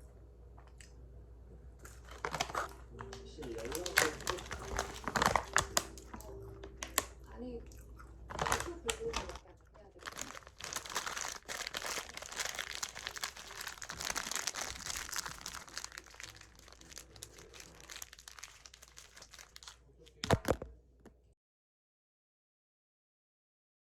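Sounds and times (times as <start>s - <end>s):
plastic packaging crinkling: 1.9s - 7.2s, 8.2s - 20.7s.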